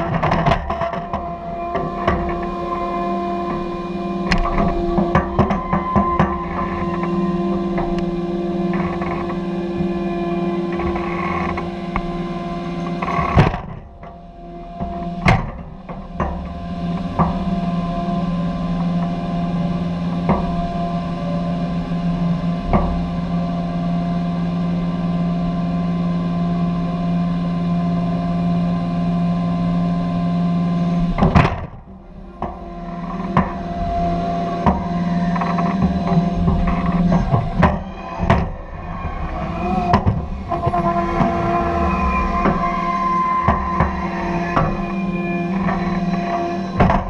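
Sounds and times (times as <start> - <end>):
low machine drone: 0.0 - 47.0
sharp knocks: 31.2 - 47.0.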